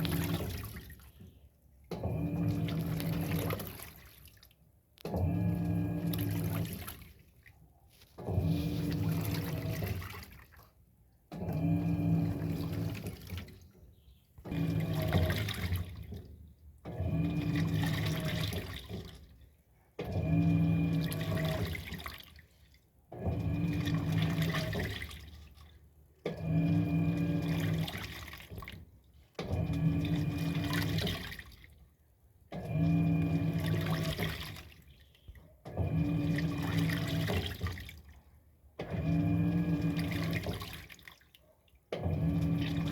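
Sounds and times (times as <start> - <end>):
washing machine motor humming: 0.0 - 4.2, 5.0 - 7.5, 8.1 - 41.2, 41.9 - 42.9
water sloshing: 0.0 - 42.9.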